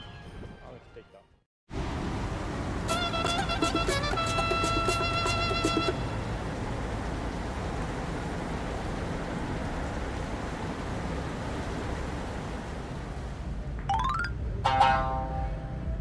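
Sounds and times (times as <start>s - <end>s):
background music: 2.9s - 6.1s, 13.9s - 16.0s.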